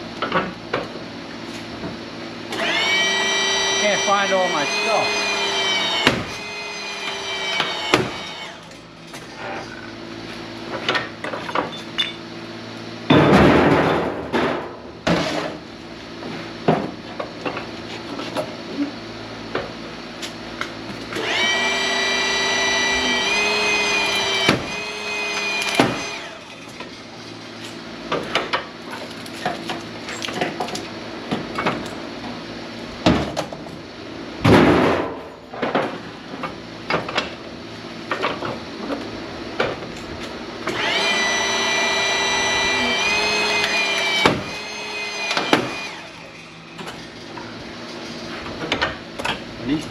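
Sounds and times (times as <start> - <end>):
power tool whining: 2.4 - 10.0, 21.0 - 27.4, 40.6 - 47.4
machine hum: 2.5 - 10.0, 21.0 - 27.2, 40.4 - 46.8
loud metal impacts: 5.0 - 8.7.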